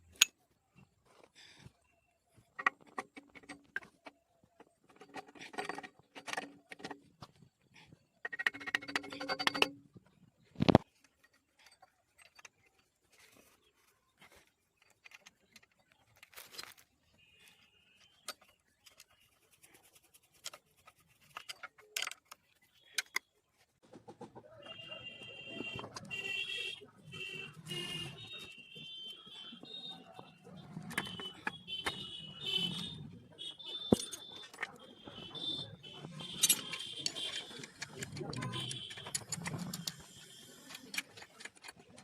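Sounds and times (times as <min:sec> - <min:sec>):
metal clinks and knocks: 0:02.5 - 0:07.6, 0:08.2 - 0:10.0, 0:25.7 - 0:42.0.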